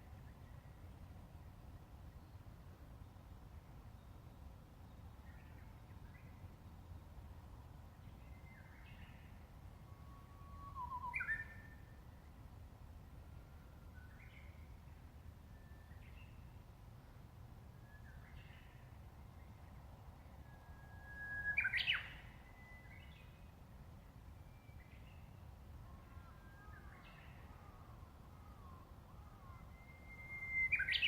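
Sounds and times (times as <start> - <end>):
bird singing whistled song: 8.2 - 11.9, 15.5 - 16.5, 17.8 - 18.8, 20.4 - 23.5, 24.4 - 25.4, 26.0 - 31.0
short whistled bird calls: 10.0 - 11.8, 20.4 - 23.4, 26.1 - 31.0.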